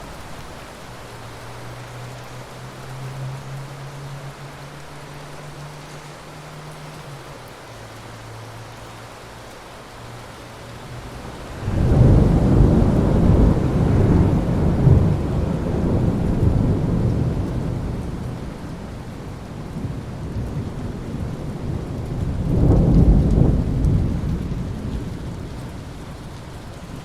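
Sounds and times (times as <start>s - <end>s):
steady rain: 0.0s - 27.0s
thunder rumbling: 11.0s - 27.0s.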